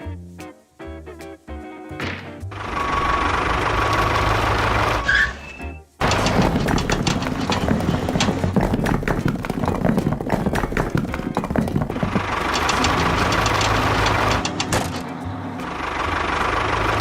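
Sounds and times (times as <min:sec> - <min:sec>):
rapid clicking: 0:06.0 - 0:15.1.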